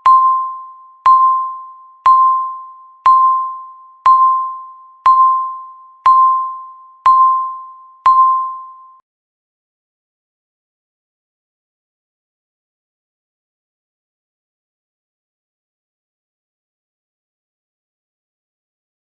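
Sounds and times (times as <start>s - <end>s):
electronic timer beeps: 0.0s - 9.0s.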